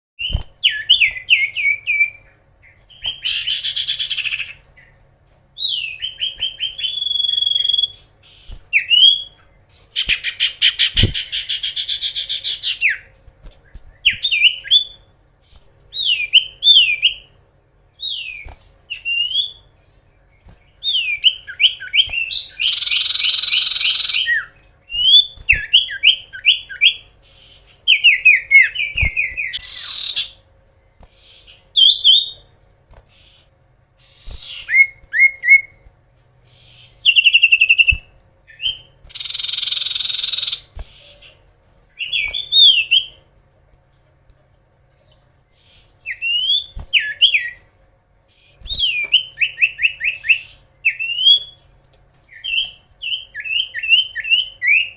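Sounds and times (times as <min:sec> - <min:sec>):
bird buzzy chattering trills: 0:25.5 - 0:30.4.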